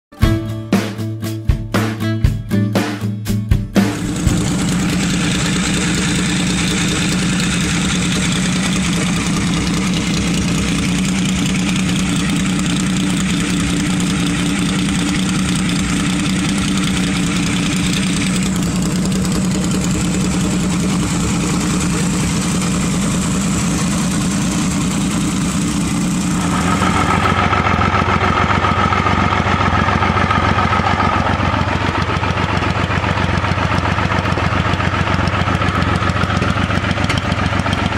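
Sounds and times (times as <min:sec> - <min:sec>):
motorcycle engine idling: 0:03.9 - 0:37.9.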